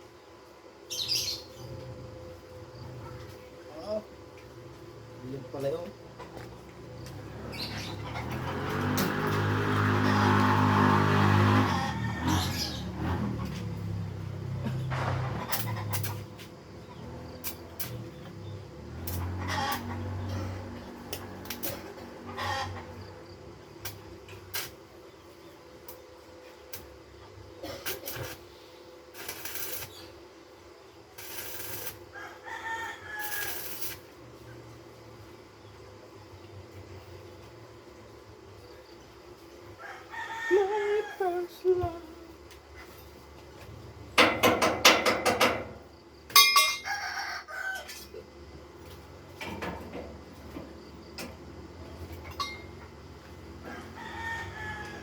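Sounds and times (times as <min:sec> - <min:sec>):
rooster crowing: 0:08.6 - 0:13.0, 0:31.8 - 0:34.0, 0:39.8 - 0:42.0, 0:46.6 - 0:48.2, 0:53.5 - 0:55.0
scattered knocks: 0:44.2 - 0:45.8.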